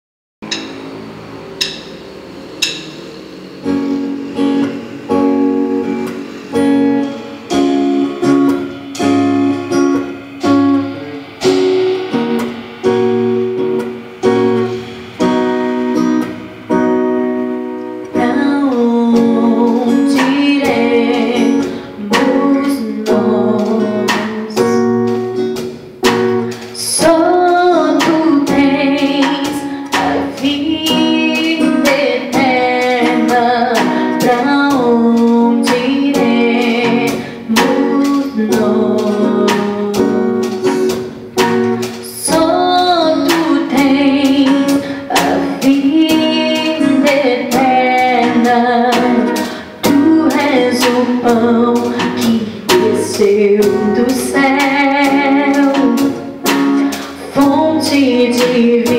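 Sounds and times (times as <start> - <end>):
acoustic guitar strumming: 0.4 - 58.9
woman singing: 18.0 - 25.2, 26.6 - 40.9, 42.0 - 58.9.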